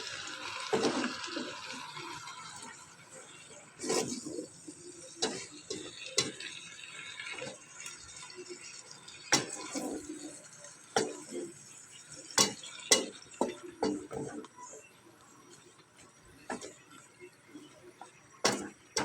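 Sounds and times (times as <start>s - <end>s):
quiet scraping: 3.2s - 5.8s
utensils clinking on cookware: 5.0s - 7.6s, 8.6s - 14.4s.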